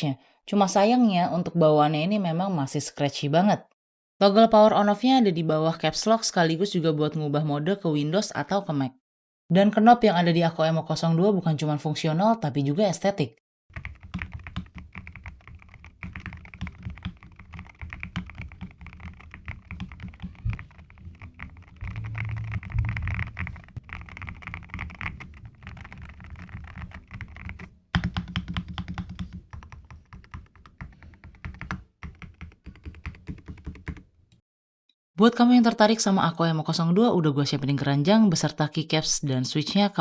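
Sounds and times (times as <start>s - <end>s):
mechanical keyboard typing: 13.7s - 34.1s.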